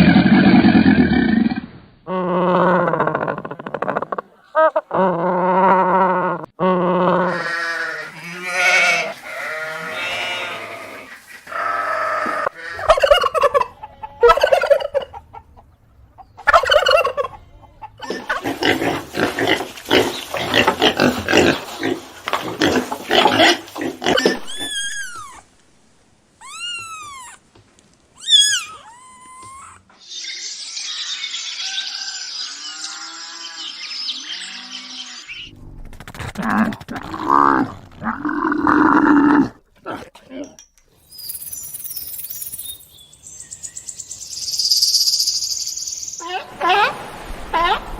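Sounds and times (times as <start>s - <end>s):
farm animal and poultry calls: 7.1s - 25.4s, 28.2s - 35.5s
short arching chirps: 40.8s - 46.2s.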